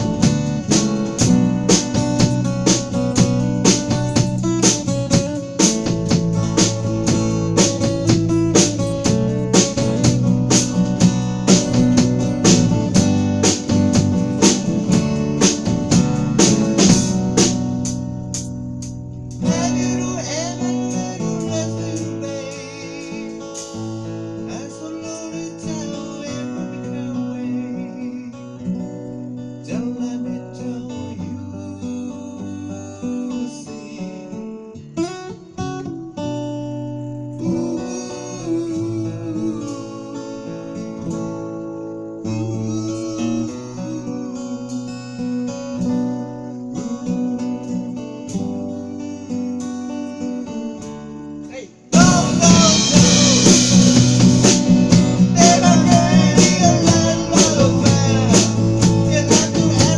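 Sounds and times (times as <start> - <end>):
band playing pop song: 0.0 - 27.4, 51.9 - 59.9.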